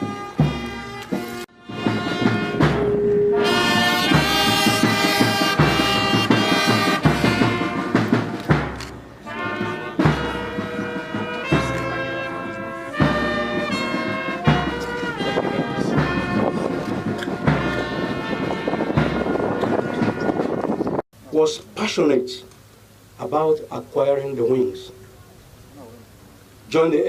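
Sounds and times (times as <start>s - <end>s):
low drum beat: 0.0s - 21.0s
sustained horn notes: 0.0s - 21.0s.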